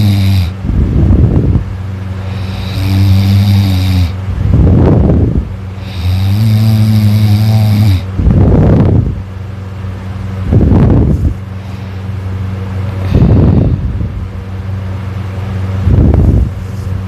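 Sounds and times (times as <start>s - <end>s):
person snoring loudly: 0.0s - 0.6s, 2.2s - 4.2s, 5.7s - 8.1s, 13.0s - 13.9s.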